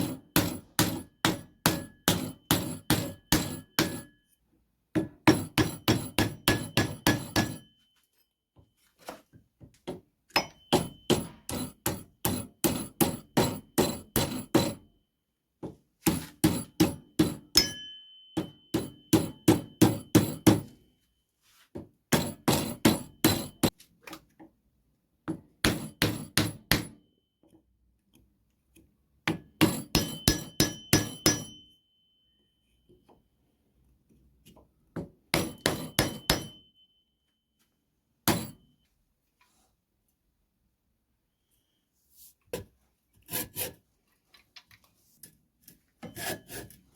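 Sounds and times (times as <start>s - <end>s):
hammer blows with metallic ring: 0.0s - 4.2s, 5.3s - 7.9s, 10.3s - 12.8s, 17.2s - 20.7s, 29.8s - 32.5s, 35.3s - 37.1s.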